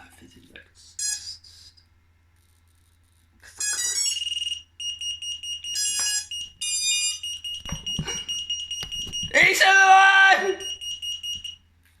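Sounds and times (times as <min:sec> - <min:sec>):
electronic beeps: 0:03.6 - 0:09.6, 0:10.6 - 0:11.6.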